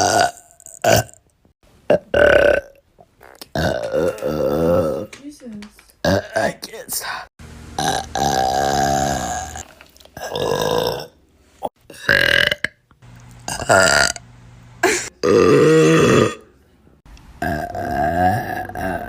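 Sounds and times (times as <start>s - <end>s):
loud drawn-out burps: 0.0s - 1.2s, 1.9s - 5.1s, 6.0s - 6.5s, 7.8s - 9.6s, 10.2s - 11.2s, 11.9s - 12.9s, 13.5s - 14.2s, 14.8s - 16.5s, 17.4s - 19.0s.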